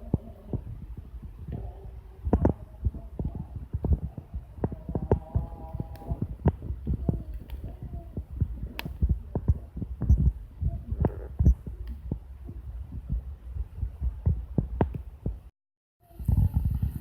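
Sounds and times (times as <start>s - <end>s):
low rumble: 0.0s - 15.5s
campfire crackling and popping: 2.2s - 10.2s.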